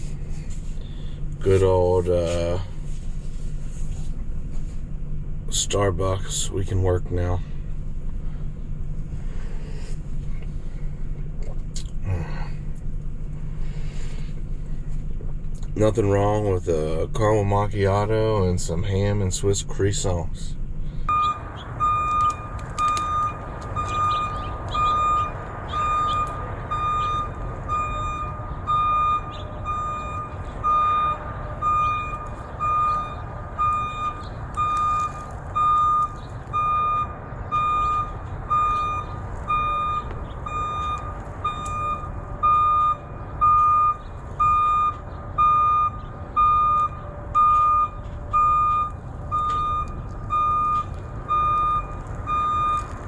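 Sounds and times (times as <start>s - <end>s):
engine rumble: 0.0s - 53.0s
reversing alarm beeping: 21.1s - 53.0s.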